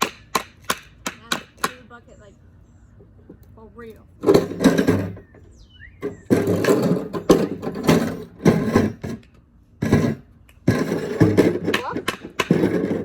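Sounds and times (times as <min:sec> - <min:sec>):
hard objects scraped on ground: 0:04.2 - 0:05.4, 0:06.0 - 0:13.0.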